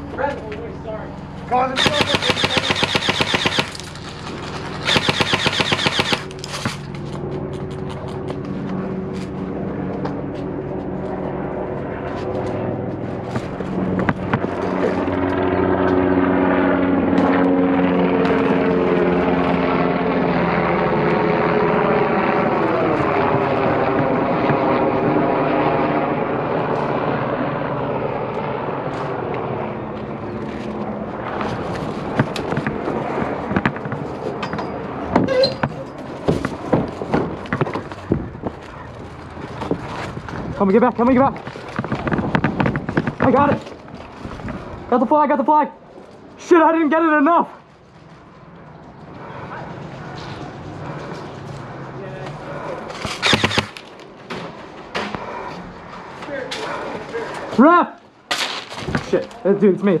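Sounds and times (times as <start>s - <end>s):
engine drone: 0.0s - 40.6s, 47.6s - 57.5s
airsoft gun full-auto fire: 1.8s - 3.9s, 4.8s - 6.4s, 53.2s - 53.8s.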